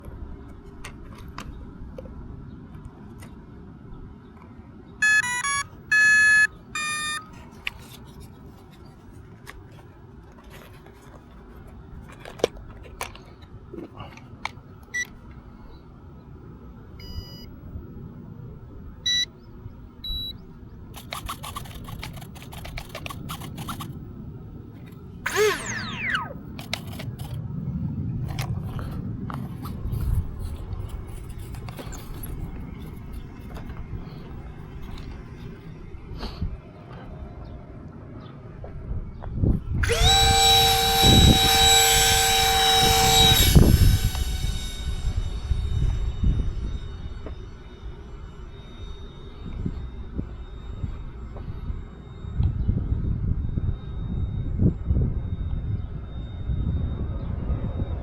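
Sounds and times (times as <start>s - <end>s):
electronic beep tones: 5.0s - 7.4s, 17.0s - 17.5s, 19.1s - 19.3s, 20.0s - 20.4s, 25.3s - 26.5s
brief falling whine: 5.0s - 7.5s, 25.2s - 37.6s, 39.1s - 58.0s
scattered clicks: 21.0s - 24.0s, 24.9s - 27.4s.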